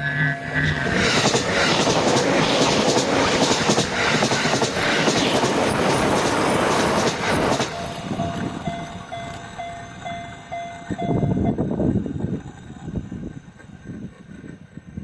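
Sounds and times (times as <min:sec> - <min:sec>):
train wheels rushing on rail: 0:00.0 - 0:15.0
clacks over rail joints: 0:00.6 - 0:15.0.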